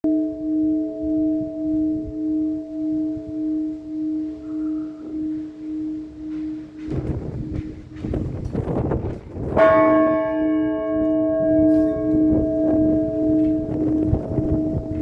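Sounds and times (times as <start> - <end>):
bell struck and ringing: 0.0 - 8.5, 9.6 - 15.0
low bell humming: 0.0 - 15.0.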